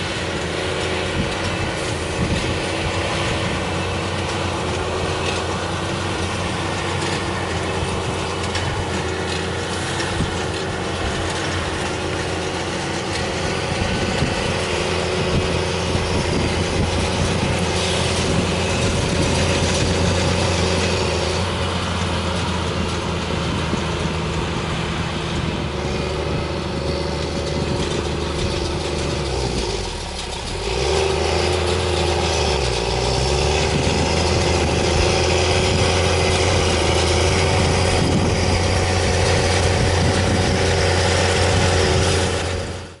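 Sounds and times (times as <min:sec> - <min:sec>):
hay baler mechanical noise: 0:00.0 - 0:43.0
tractor engine running: 0:00.0 - 0:43.0.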